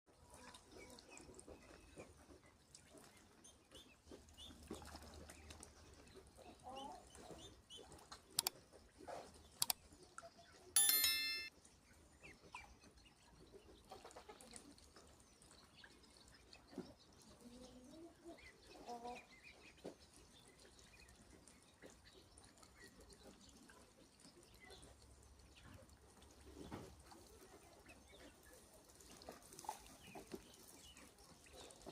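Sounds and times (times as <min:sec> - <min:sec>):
sharp clicks: 0:08.4 - 0:08.6.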